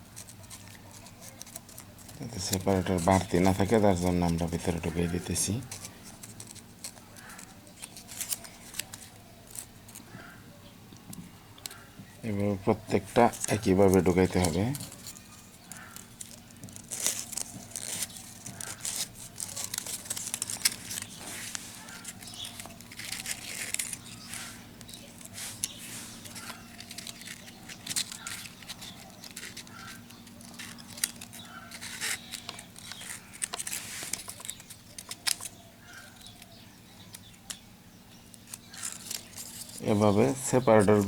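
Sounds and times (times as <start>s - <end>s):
paper scraping: 0.0s - 10.0s, 12.7s - 35.4s.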